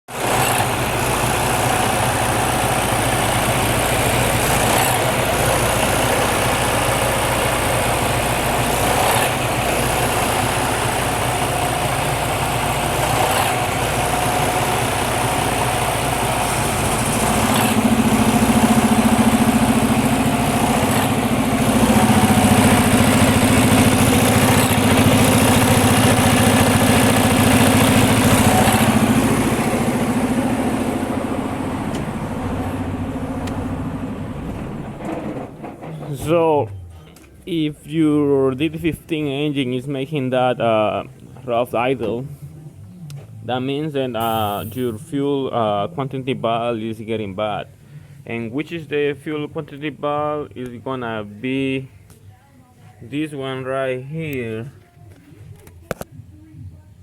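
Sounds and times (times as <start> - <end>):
diesel engine idling roughly: 0.1 - 35.8, 44.2 - 44.9.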